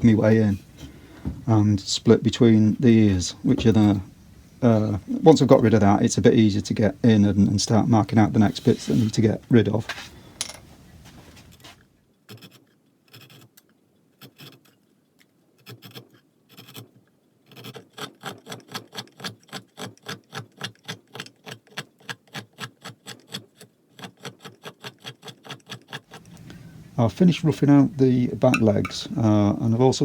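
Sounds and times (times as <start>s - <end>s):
carving tools cutting wood: 12.3s - 13.6s, 14.2s - 14.8s, 15.6s - 26.5s.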